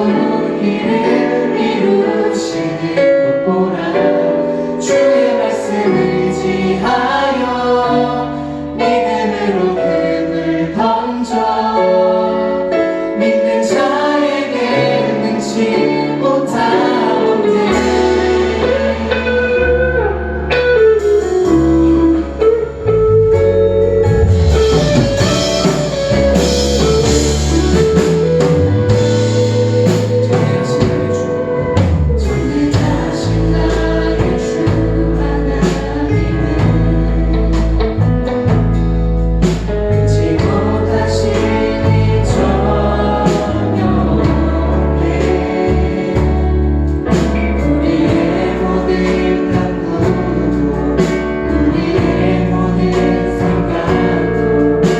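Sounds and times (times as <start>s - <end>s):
group singing worship song: 0.0s - 22.9s, 23.8s - 54.9s
drums: 0.0s - 54.9s
bass guitar: 14.0s - 54.9s.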